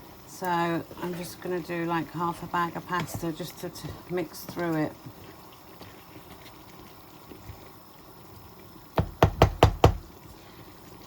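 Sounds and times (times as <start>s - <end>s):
sauce simmering and bubbling: 0.0s - 11.0s
sharp knocks: 9.0s - 10.0s.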